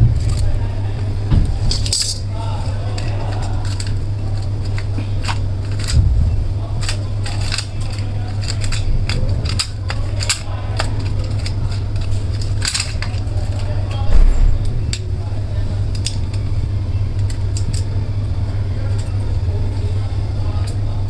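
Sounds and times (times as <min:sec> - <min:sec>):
low hum: 0:00.0 - 0:21.0
small plastic parts clicking: 0:01.4 - 0:15.1, 0:17.2 - 0:18.0.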